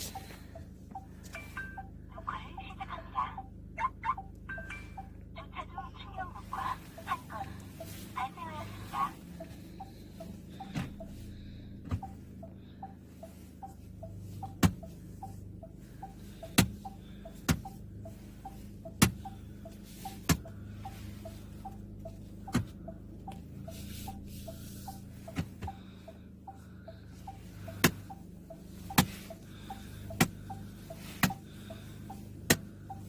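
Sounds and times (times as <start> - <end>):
low steady hum: 0.0 - 33.0
turn signal indicator ticking: 0.0 - 33.0
sharp clicks from steering wheel: 31.2 - 31.4.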